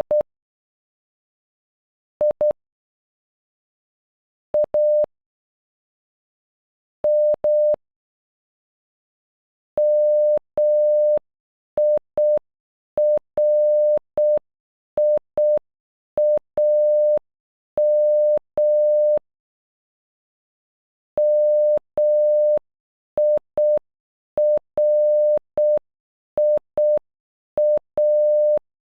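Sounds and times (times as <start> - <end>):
morse code beeps: 21.2 - 22.6, 24.4 - 25.8, 26.4 - 27.0, 27.6 - 28.6.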